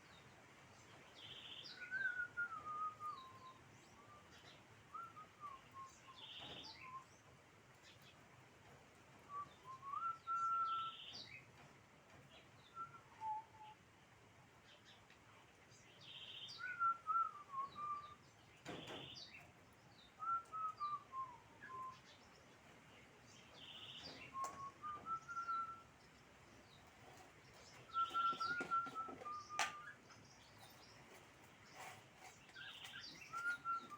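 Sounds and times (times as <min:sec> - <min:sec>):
bird singing whistled phrases: 0:01.3 - 0:07.1, 0:09.3 - 0:11.3, 0:16.0 - 0:18.2, 0:20.2 - 0:22.2, 0:23.6 - 0:25.9, 0:27.9 - 0:30.1, 0:32.6 - 0:33.9.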